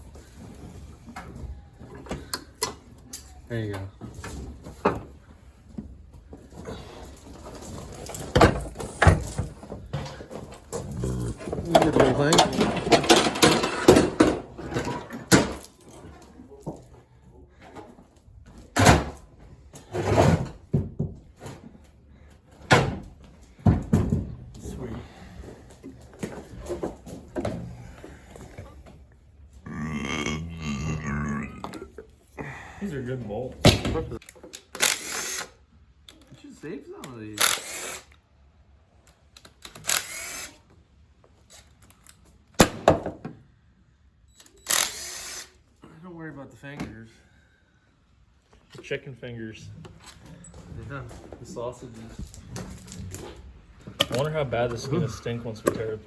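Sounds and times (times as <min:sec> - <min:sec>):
rattling scrape: 0:06.7 - 0:16.2
burst of tool noise: 0:34.8 - 0:35.6, 0:37.4 - 0:38.1, 0:39.8 - 0:40.6, 0:44.7 - 0:45.6.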